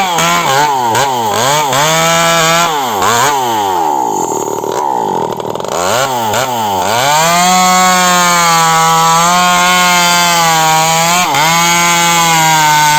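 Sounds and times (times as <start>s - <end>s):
power tool cutting wood: 0.0s - 12.9s.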